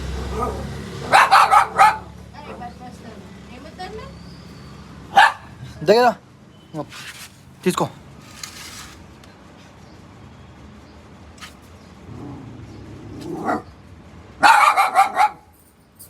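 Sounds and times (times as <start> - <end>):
dog barking: 0.2 - 2.6, 5.0 - 5.8, 13.2 - 13.7, 14.4 - 15.6.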